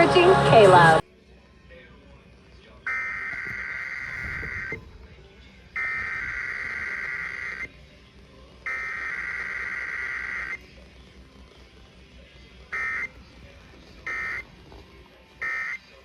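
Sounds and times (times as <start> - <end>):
raspy two-tone data squawk: 2.9 - 4.8, 5.8 - 7.7, 8.7 - 10.6, 12.7 - 13.2, 14.0 - 14.4, 15.4 - 15.8.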